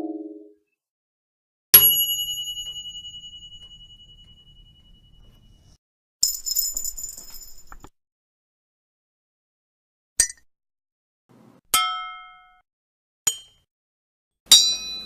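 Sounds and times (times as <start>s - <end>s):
bright bell-like ding: 1.8s - 5.8s, 14.5s - 15.0s.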